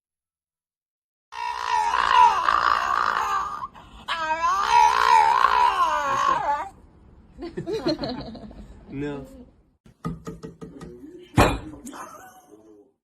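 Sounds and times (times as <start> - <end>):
dog howling: 1.4 - 6.8.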